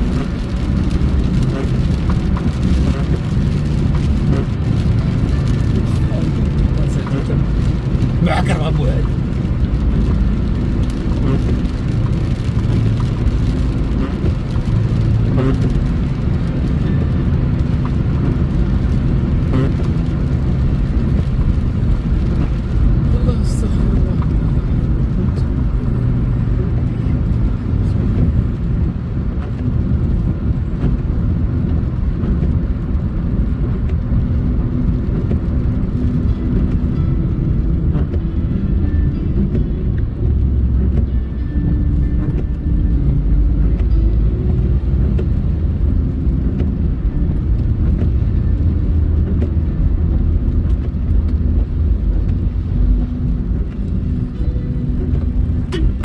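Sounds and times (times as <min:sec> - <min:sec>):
car driving on road: 0:00.0 - 0:56.0.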